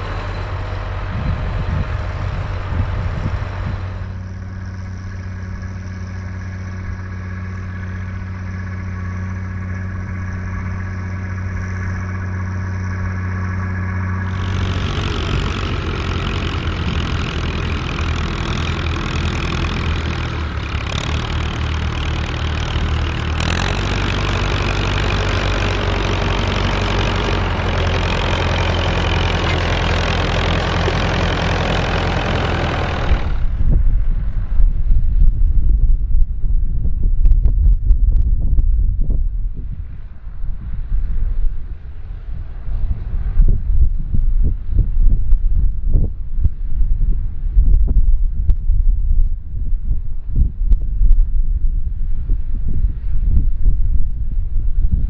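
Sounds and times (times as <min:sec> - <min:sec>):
tractor diesel engine running: 0:00.0 - 0:34.6.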